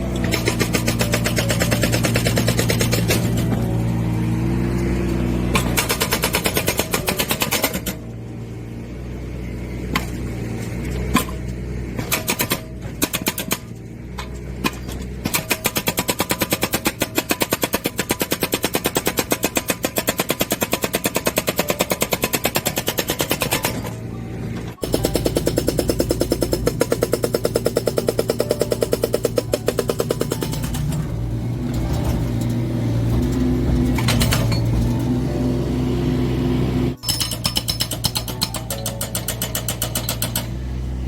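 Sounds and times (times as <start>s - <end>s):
excavator engine running: 0.0s - 8.7s, 23.4s - 41.0s
hydraulic breaker hammering: 24.8s - 35.8s, 36.8s - 40.8s.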